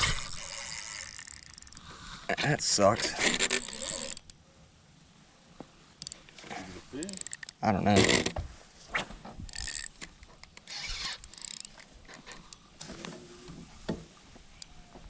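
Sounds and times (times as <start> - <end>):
fishing reel ratcheting: 0.0 - 1.9, 3.0 - 4.3, 7.1 - 7.6, 9.5 - 10.0, 10.6 - 11.8.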